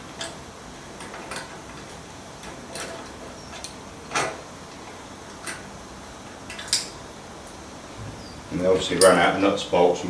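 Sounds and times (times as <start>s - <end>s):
nuts and bolts clicking: 0.0s - 5.8s, 6.4s - 7.0s, 8.6s - 9.4s.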